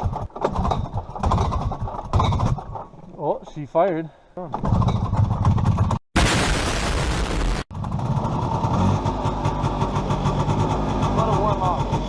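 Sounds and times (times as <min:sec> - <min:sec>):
snowmobile engine popping and idling: 0:00.0 - 0:02.9, 0:04.6 - 0:06.0, 0:06.8 - 0:12.0.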